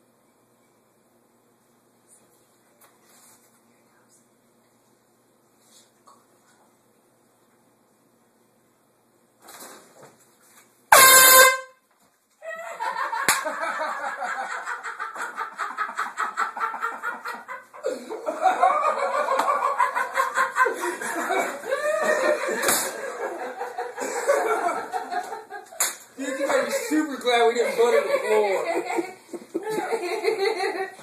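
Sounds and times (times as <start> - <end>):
air horn blast: 10.9 - 11.8
loud continuous laughter: 12.4 - 27.0, 27.6 - 31.0.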